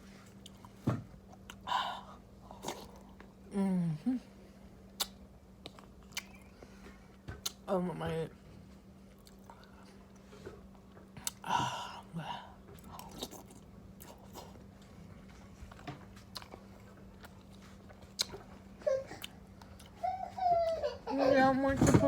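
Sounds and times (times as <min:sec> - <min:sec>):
faint steady hum: 0:00.0 - 0:22.0
chewing and biting food: 0:05.0 - 0:06.6, 0:09.1 - 0:10.2, 0:12.8 - 0:18.6.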